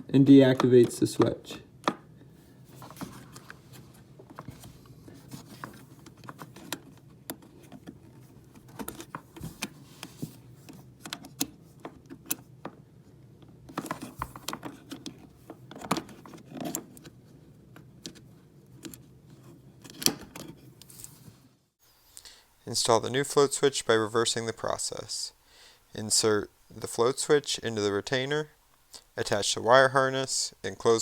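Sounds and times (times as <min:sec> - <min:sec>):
plastic parts clicking and rattling: 0:04.3 - 0:09.8, 0:13.7 - 0:17.2.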